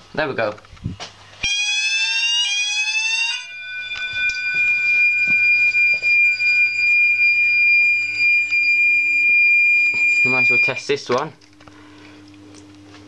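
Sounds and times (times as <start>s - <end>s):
electronic fire alarm tone: 1.4s - 11.0s.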